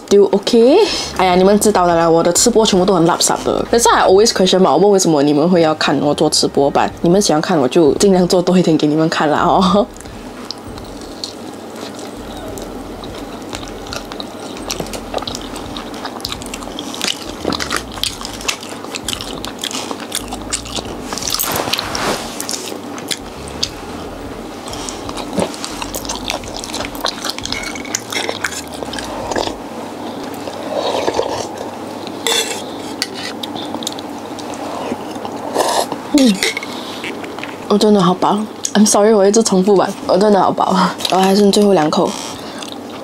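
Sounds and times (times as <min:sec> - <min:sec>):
person chewing food: 0:09.5 - 0:37.6, 0:42.3 - 0:43.0
utensils clinking on dishes: 0:32.2 - 0:33.4.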